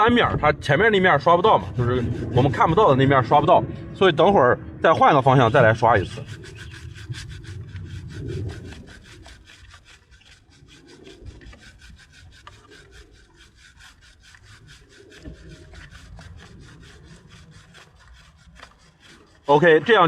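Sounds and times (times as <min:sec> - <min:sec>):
brush scrubbing a chain: 0:00.0 - 0:20.0.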